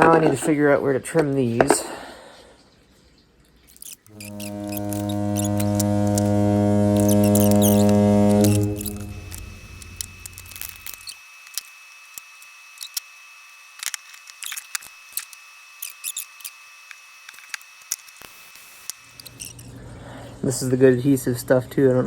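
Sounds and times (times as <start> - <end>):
hand tools and wires clicking: 3.7 - 13.1, 13.8 - 19.7
low hum: 4.1 - 11.1.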